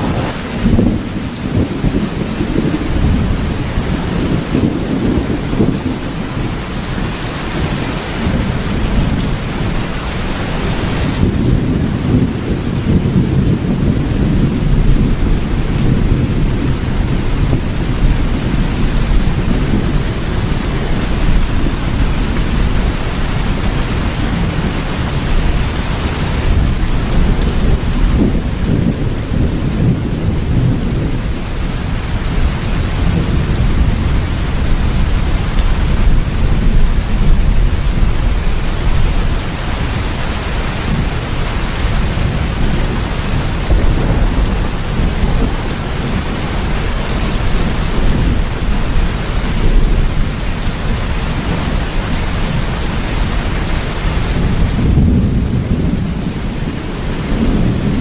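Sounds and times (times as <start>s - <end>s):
rumble of thunder: 0.0s - 58.0s
steady rain: 0.0s - 58.0s.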